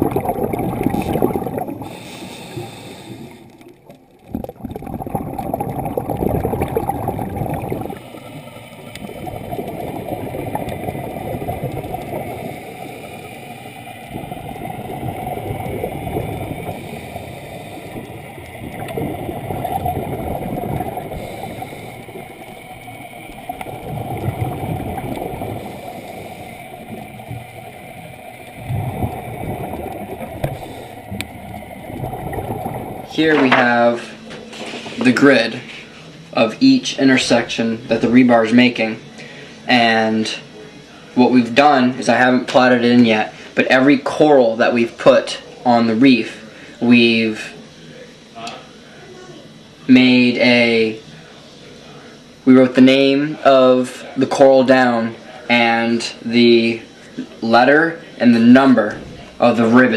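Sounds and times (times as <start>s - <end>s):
water gurgling and churning: 0.0s - 34.3s.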